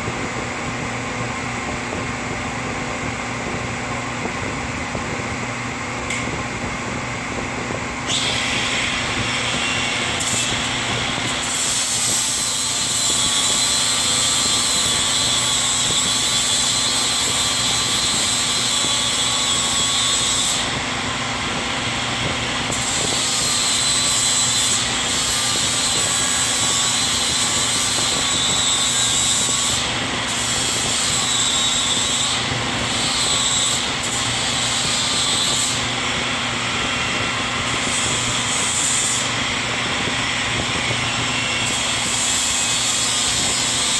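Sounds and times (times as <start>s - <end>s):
angle grinder grinding metal: 8.0s - 21.1s, 22.6s - 43.9s.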